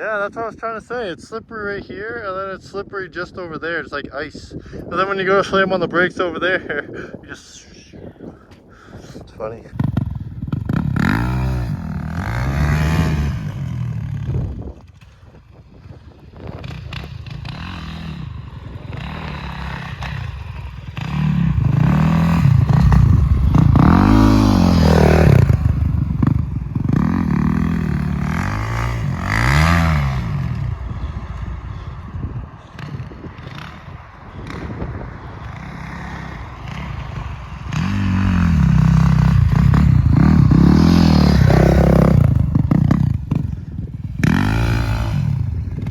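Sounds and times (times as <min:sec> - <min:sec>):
off-road motorcycle engine revving: 0:09.7 - 0:45.9.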